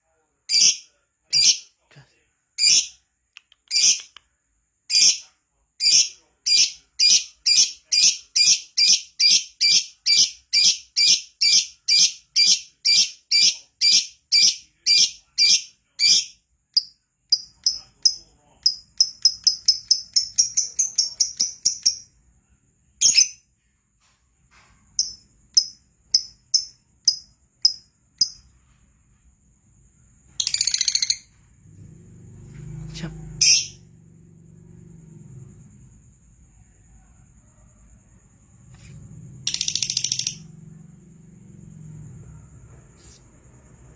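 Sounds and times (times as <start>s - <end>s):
lovebird chirping shrilly: 0.5s - 0.8s, 1.4s - 1.6s, 2.6s - 2.9s, 3.7s - 4.2s, 4.9s - 5.2s, 5.8s - 16.3s, 30.4s - 31.3s, 33.4s - 33.8s, 39.5s - 40.4s.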